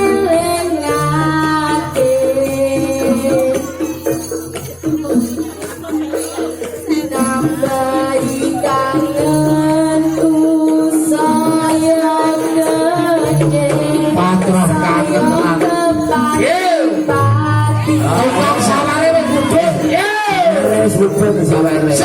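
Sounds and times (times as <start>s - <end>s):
percussion: 0.0s - 22.0s
folk ensemble melody: 14.1s - 22.0s.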